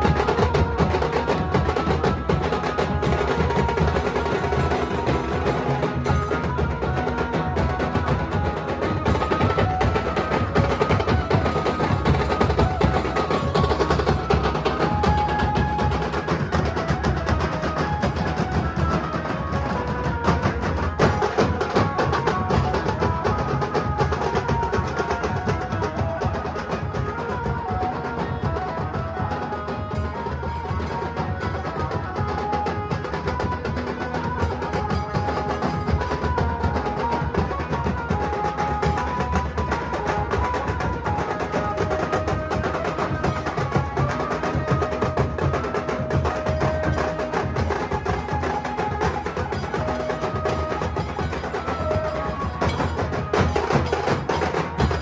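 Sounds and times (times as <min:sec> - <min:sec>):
pitched melodic notes: 0:00.0 - 0:17.2
dhol drums playing fast rhythm: 0:00.0 - 0:55.0.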